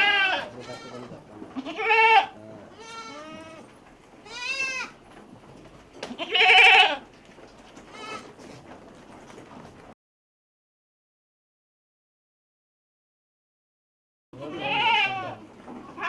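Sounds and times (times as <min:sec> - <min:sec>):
goats bleating: 0:00.0 - 0:05.0, 0:06.1 - 0:07.1, 0:07.8 - 0:08.4, 0:14.4 - 0:16.0.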